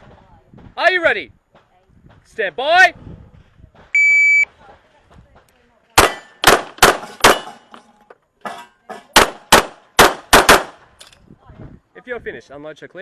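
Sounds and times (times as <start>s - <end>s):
handgun shots: 6.0s - 7.6s, 9.2s - 10.8s.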